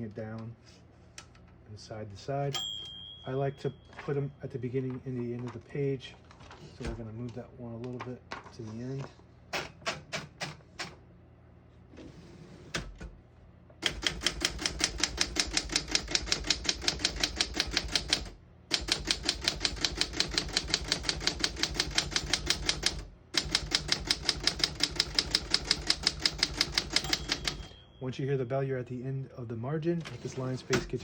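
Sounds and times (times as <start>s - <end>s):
manual typewriter typing: 13.8s - 27.8s.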